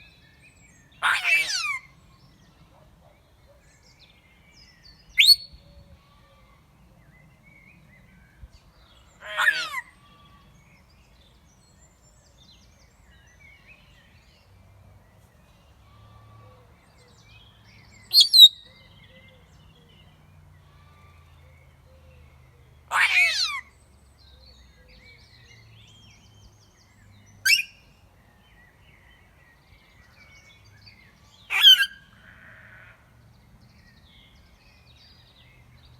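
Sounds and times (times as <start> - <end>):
parrot calling: 1.0 - 1.9, 9.2 - 9.9, 22.9 - 23.7, 27.4 - 27.7, 31.5 - 32.0.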